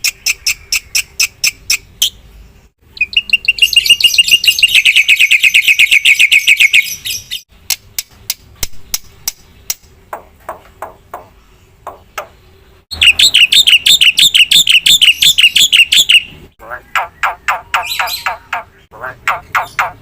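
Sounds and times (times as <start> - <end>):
starling singing: 2.9 - 7.4, 11.9 - 20.0.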